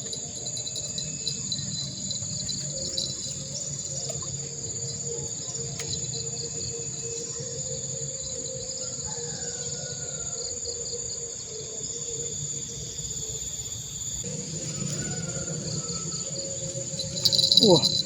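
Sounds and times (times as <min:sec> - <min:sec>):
jingling rattle: 0:00.0 - 0:04.2, 0:14.3 - 0:18.0
insects chirring: 0:00.0 - 0:18.0.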